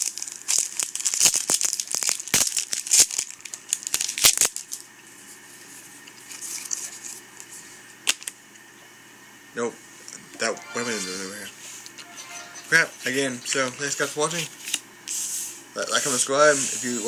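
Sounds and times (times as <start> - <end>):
foil wrapper tearing and crinkling: 0.0 - 4.9.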